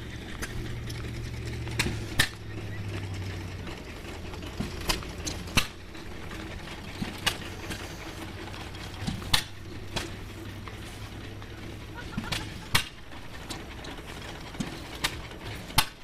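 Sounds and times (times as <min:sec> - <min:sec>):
stationary engines humming: 0:00.0 - 0:16.0
sharp engine pops: 0:01.8 - 0:02.4, 0:12.3 - 0:13.0.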